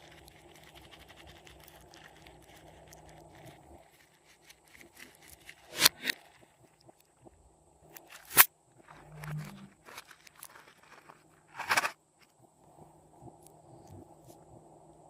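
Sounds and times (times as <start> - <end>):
slime squishing: 0.0 - 7.0.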